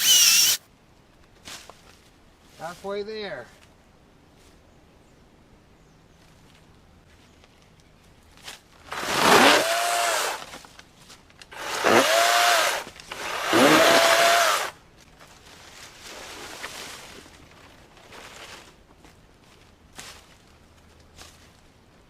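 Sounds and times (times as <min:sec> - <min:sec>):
electric chainsaw cutting wood: 0:00.0 - 0:00.6, 0:09.0 - 0:10.4, 0:11.6 - 0:14.7.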